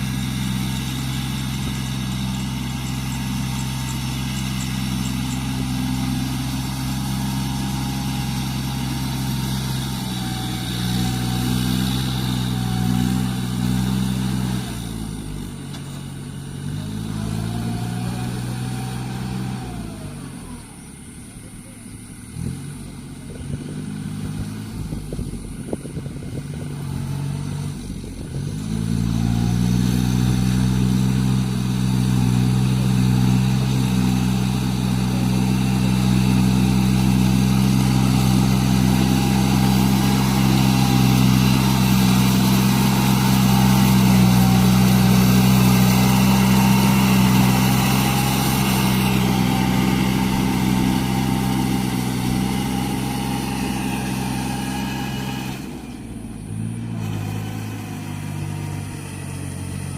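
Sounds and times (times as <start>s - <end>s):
tractor diesel engine running: 0.0s - 59.9s.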